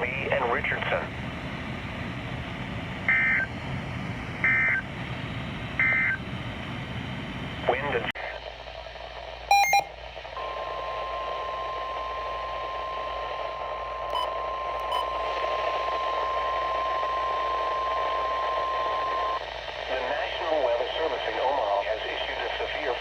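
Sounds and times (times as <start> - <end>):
radio static: 0.0 - 9.8, 14.9 - 23.0
steady warning alarm tone: 3.1 - 3.5, 4.4 - 4.9, 5.8 - 6.2, 9.5 - 10.7
electronic data tones: 9.5 - 10.5.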